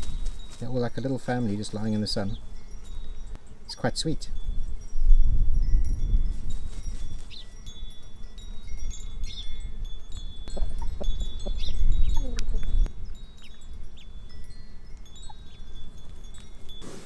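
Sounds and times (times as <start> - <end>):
wind chimes ringing: 0.1 - 17.0.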